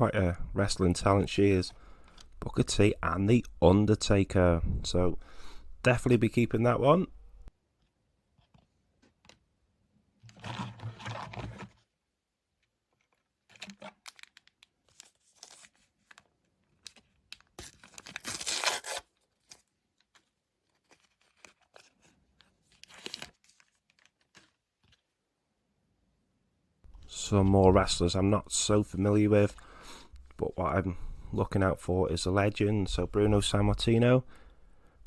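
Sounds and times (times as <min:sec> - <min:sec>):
wrapper crinkling: 0:13.5 - 0:25.1
foil pack tearing: 0:17.6 - 0:19.2.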